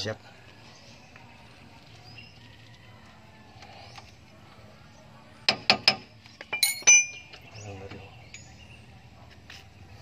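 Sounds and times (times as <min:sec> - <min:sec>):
metallic clink: 0:05.9 - 0:07.3.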